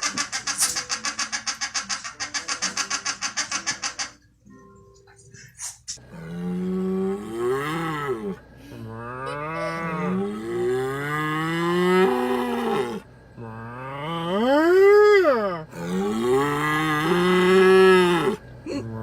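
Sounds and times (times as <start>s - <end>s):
animal long bending calls: 6.1s - 19.0s.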